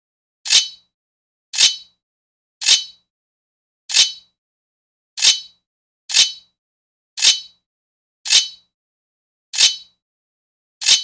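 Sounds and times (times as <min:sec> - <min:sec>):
sword blade scraping on metal: 0:00.5 - 0:00.8, 0:01.6 - 0:02.0, 0:02.6 - 0:03.0, 0:03.9 - 0:04.3, 0:05.2 - 0:06.5, 0:07.2 - 0:07.6, 0:08.3 - 0:08.6, 0:09.6 - 0:10.0.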